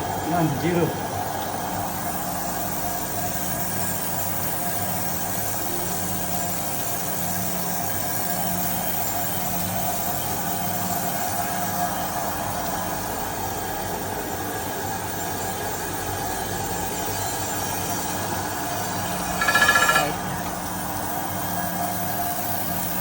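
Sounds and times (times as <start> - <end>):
grinding machine running: 18.6 - 21.1.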